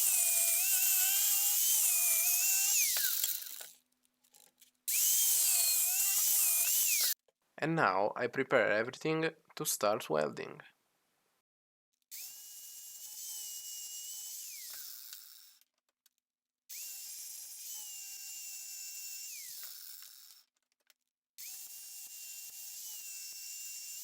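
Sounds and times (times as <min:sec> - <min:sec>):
electric drill whining: 0:00.0 - 0:03.8, 0:04.9 - 0:07.2, 0:12.2 - 0:15.6, 0:16.7 - 0:20.5, 0:21.4 - 0:24.0.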